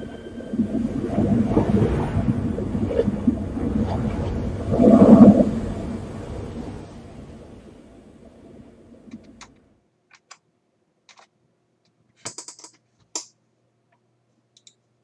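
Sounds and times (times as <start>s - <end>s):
low rumble: 0.0s - 9.4s.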